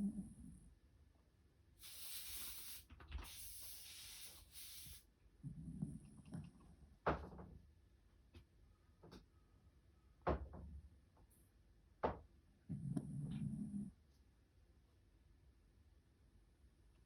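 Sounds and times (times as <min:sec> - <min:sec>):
dog snoring: 0:00.0 - 0:00.7, 0:03.4 - 0:06.6, 0:12.7 - 0:14.0
dog hissing breaths: 0:01.8 - 0:05.1.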